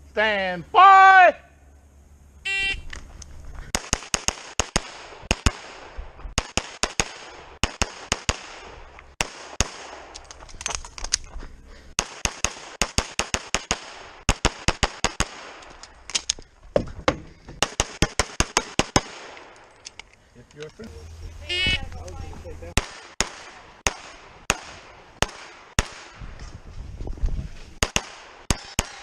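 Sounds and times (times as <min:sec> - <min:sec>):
pistol shots: 0:03.7 - 0:10.1, 0:12.0 - 0:15.7, 0:17.6 - 0:19.5, 0:22.8 - 0:26.2, 0:27.8 - 0:29.0.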